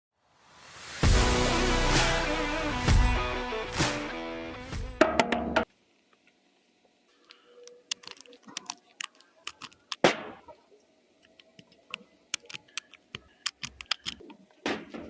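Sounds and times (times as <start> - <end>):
rifle action metallic clicks: 11.3 - 14.2.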